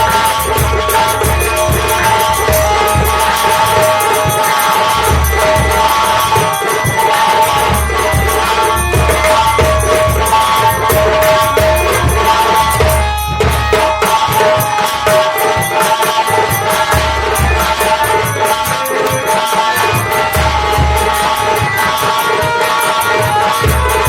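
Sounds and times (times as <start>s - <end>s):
fast low drumbeat: 0.0s - 14.8s
droning held melody: 0.0s - 24.0s
jingling metal percussion: 0.0s - 24.0s.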